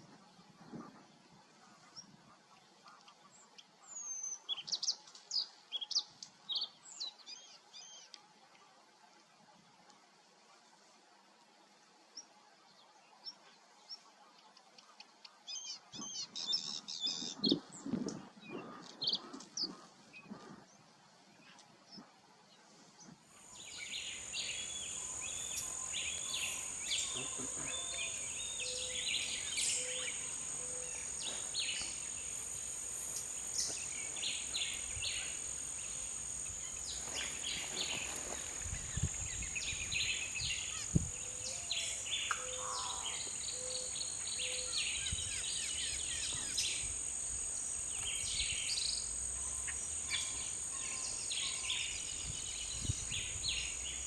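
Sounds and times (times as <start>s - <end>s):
high-pitched insect drone: 23.4s - 54.0s.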